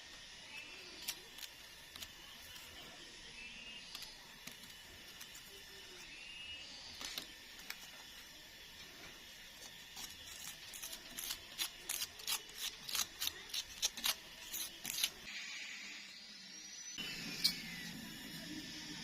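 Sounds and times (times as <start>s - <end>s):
sharp scraping or snipping strokes: 9.6s - 15.3s.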